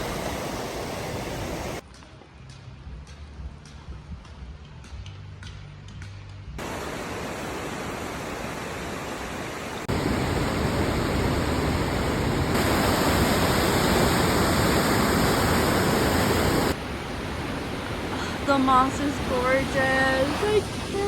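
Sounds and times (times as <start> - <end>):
creek water rushing: 0.0 - 1.8, 6.6 - 21.0.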